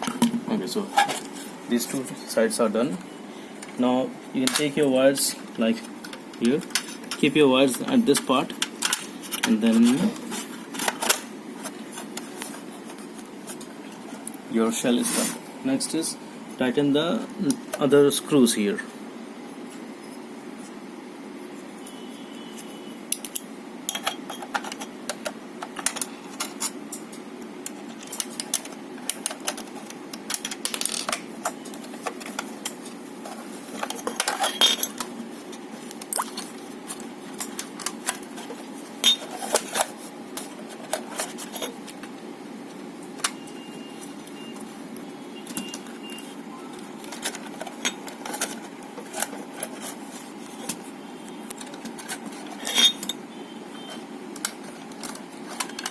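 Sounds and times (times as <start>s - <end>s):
small parts handled: 28.0s - 35.1s.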